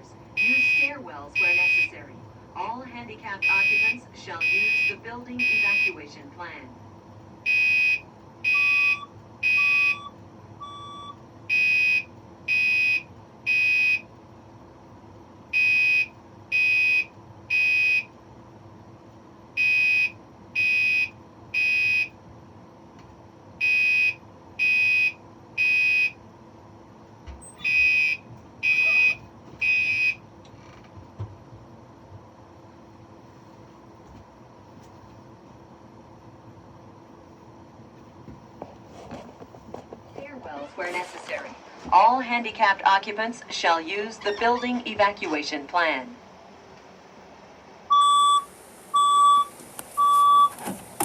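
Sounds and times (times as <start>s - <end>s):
steady low hum: 0.0s - 51.0s
fainter lower alarm beep: 0.4s - 1.9s, 3.4s - 6.0s, 7.4s - 14.1s, 15.5s - 18.1s, 19.6s - 22.1s, 23.6s - 26.2s, 27.6s - 30.2s, 47.9s - 50.6s
fire alarm high-pitched beeps: 0.4s - 1.9s, 3.4s - 6.0s, 7.4s - 14.1s, 15.5s - 18.1s, 19.6s - 22.1s, 23.6s - 26.2s, 27.6s - 30.2s, 47.9s - 50.6s.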